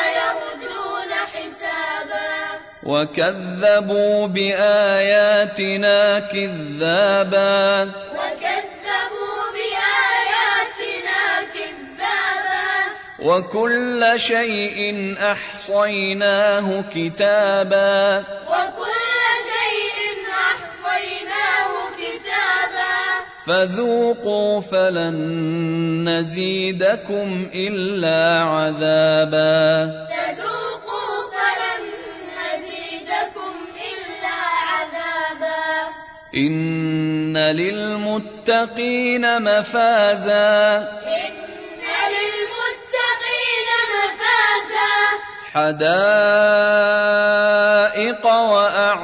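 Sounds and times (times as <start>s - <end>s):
children chanting together: 0.0s - 2.8s, 8.1s - 13.2s, 18.5s - 23.4s, 30.1s - 36.0s, 41.0s - 45.6s.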